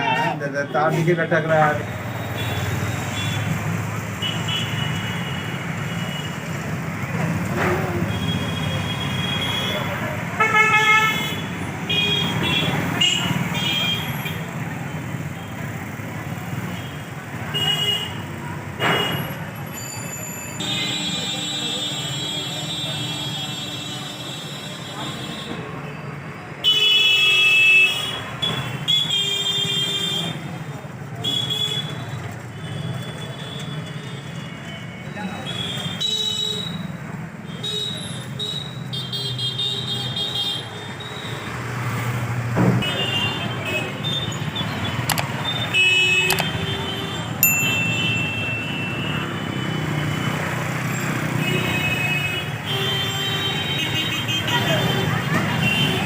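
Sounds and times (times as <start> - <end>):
traffic rumble: 0.0 - 26.8, 27.5 - 56.0
sharp clicks: 45.0 - 45.5, 46.2 - 46.6
high ringing tones: 47.4 - 49.0.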